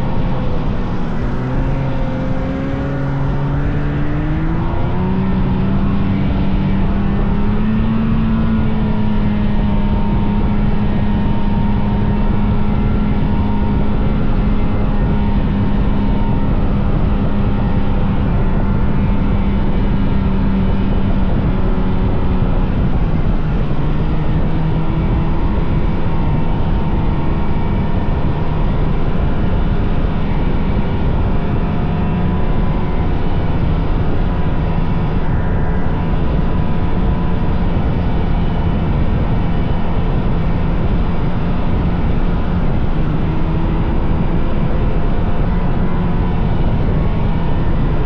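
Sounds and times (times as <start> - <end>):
rushing noise: 0.0 - 8.9
snowmobile engine running: 0.0 - 48.0.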